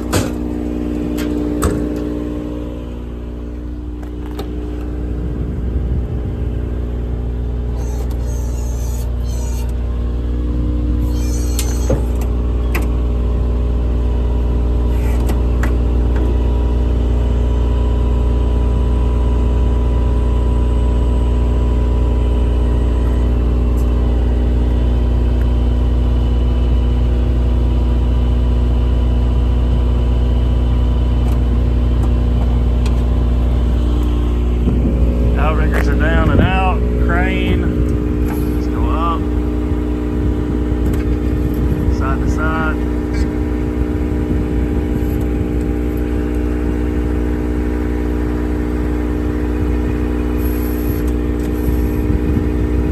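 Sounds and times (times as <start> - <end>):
truck engine humming: 0.0 - 26.2, 29.0 - 52.9
faint steady whine: 32.1 - 52.9.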